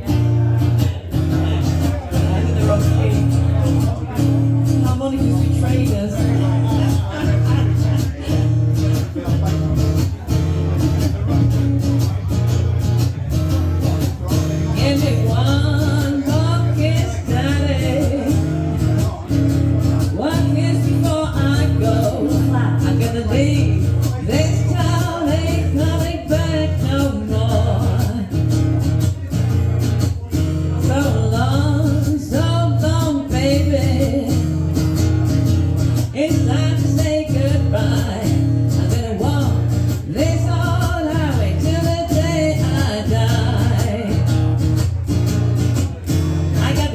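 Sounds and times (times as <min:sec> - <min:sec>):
guitar: 0:00.0 - 0:46.9
person singing: 0:14.5 - 0:28.5, 0:30.7 - 0:34.8, 0:35.8 - 0:44.5.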